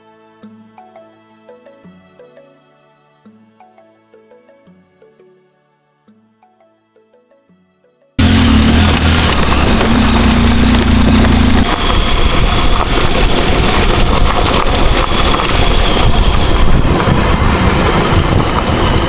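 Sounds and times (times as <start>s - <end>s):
dirt bike engine: 8.2s - 19.0s.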